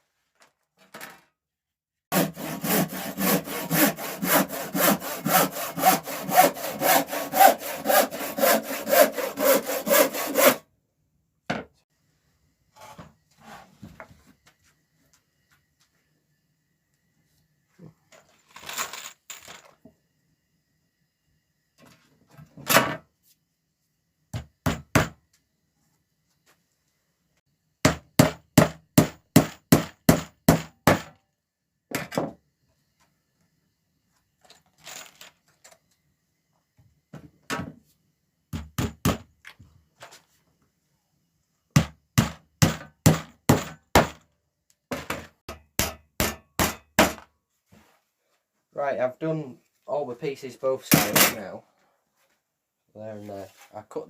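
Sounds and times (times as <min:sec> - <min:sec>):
hammer driving nails into wood: 0:44.9 - 0:47.2.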